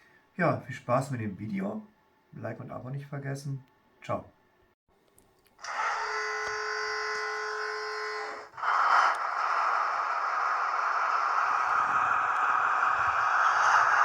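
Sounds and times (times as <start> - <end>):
model train buzzing: 5.6 - 14.0.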